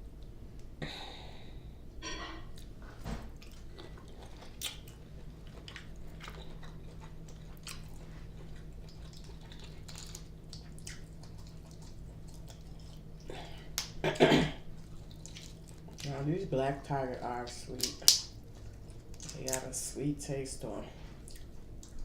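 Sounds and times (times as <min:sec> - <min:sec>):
chewing shrimp: 0:02.6 - 0:16.4, 0:17.4 - 0:19.7, 0:21.0 - 0:22.0
wet mouth clicks and smacks: 0:04.5 - 0:05.0.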